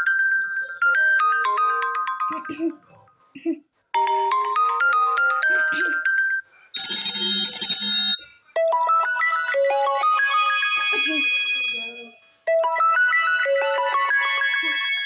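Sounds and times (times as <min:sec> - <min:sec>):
electronic ringtone melody: 0:00.0 - 0:03.0, 0:04.0 - 0:15.0
shimmering chime: 0:10.4 - 0:12.3.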